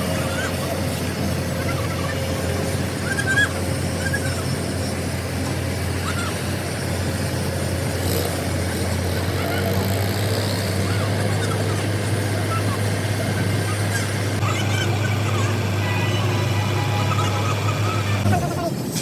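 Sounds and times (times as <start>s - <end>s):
engine droning: 0.0s - 19.0s.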